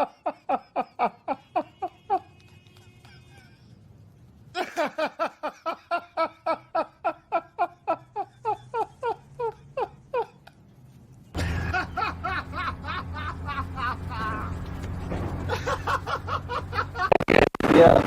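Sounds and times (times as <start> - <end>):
person laughing: 0.0 - 3.9, 4.6 - 10.6, 11.4 - 14.8, 15.4 - 17.3
steady low hum: 8.2 - 17.2.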